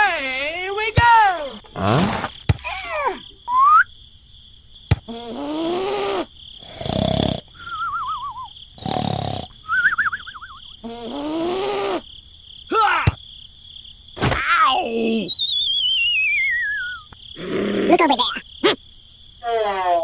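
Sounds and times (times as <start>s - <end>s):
rising whistle: 9.7s - 10.6s, 15.3s - 17.1s
pitched growling cries: 12.7s - 13.2s.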